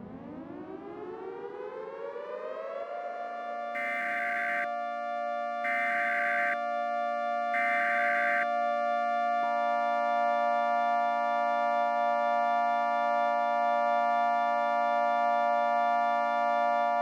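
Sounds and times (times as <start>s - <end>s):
synthesizer drone chord: 3.8s - 4.7s, 5.6s - 6.6s, 7.5s - 8.5s.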